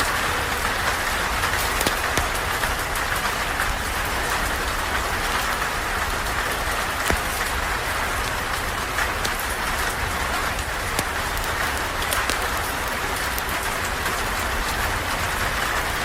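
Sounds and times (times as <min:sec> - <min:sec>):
steady rain falling: 0:00.0 - 0:16.0
sharp clicks: 0:01.5 - 0:02.8.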